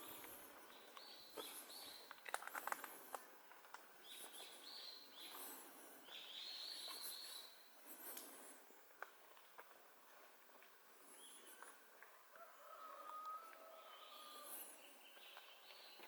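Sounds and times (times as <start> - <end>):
small birds calling: 0.0 - 3.2, 4.0 - 8.9, 11.0 - 16.0
patter of sharp clicks: 2.1 - 3.8.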